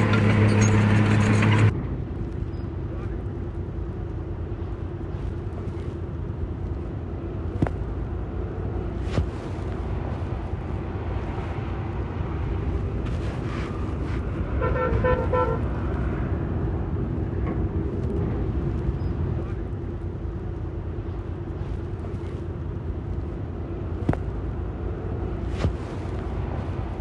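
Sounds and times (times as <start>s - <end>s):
diesel machinery rumbling: 0.0s - 27.0s
vehicle horn: 14.4s - 15.9s.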